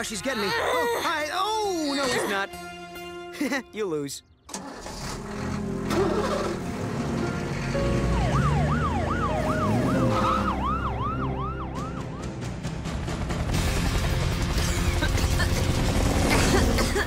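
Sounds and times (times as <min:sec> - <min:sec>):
background music: 0:00.0 - 0:17.0
emergency siren yelping: 0:08.1 - 0:12.3.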